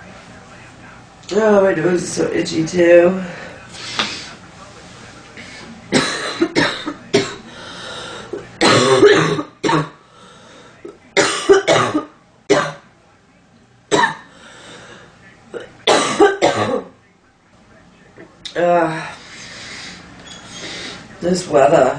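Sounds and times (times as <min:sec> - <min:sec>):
woman coughing: 0:05.9 - 0:07.4, 0:08.6 - 0:10.0, 0:11.2 - 0:12.8, 0:13.9 - 0:14.3, 0:15.9 - 0:17.0.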